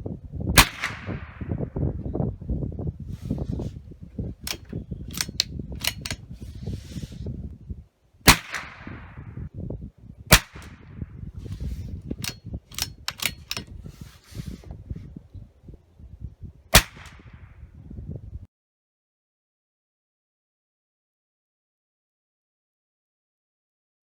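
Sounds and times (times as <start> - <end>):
rifle shots: 0.6 - 1.6, 8.3 - 9.3, 10.3 - 10.8, 16.8 - 17.4.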